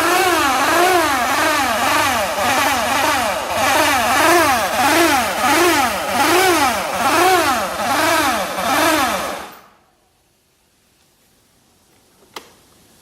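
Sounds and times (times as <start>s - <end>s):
scooter engine revving: 0.0s - 9.7s.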